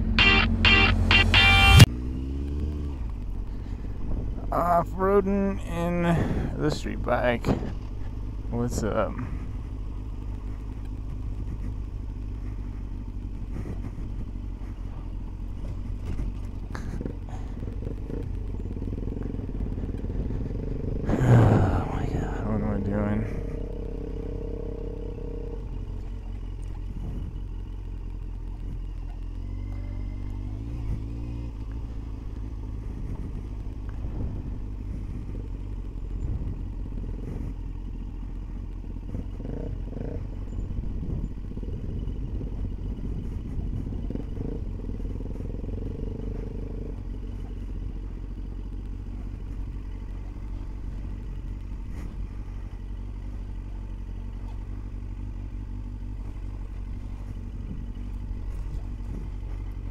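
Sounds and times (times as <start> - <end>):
motorcycle engine running: 0.0 - 59.9
motorcycle clattering over bumps: 1.9 - 59.9.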